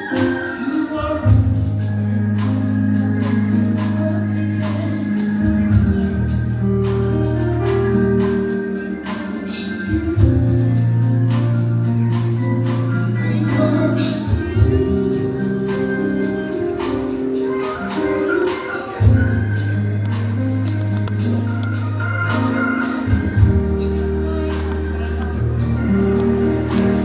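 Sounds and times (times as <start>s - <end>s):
organ chords: 0.0s - 27.0s
singing: 0.0s - 27.0s.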